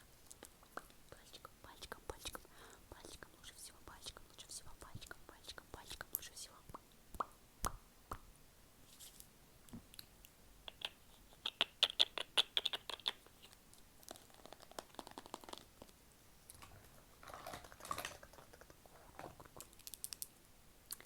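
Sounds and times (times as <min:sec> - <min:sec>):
soft rustle: 0:08.8 - 0:09.4
wet mouth clicks and smacks: 0:09.9 - 0:13.4, 0:14.0 - 0:15.9.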